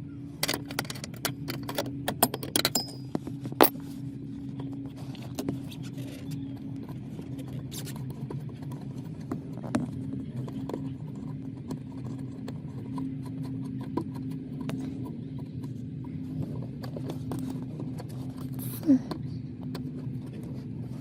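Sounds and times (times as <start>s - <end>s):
steady low hum: 0.0s - 21.0s
wrench tapping metal: 0.4s - 3.1s.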